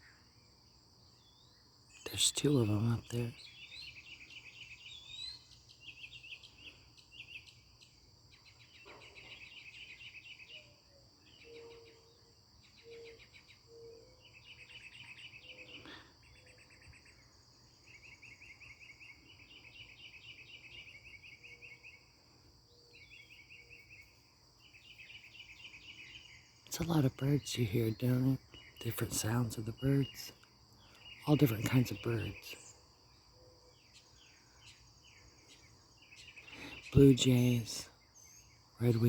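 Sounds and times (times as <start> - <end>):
bird singing chattering notes: 25.0 - 32.7, 35.4 - 39.0.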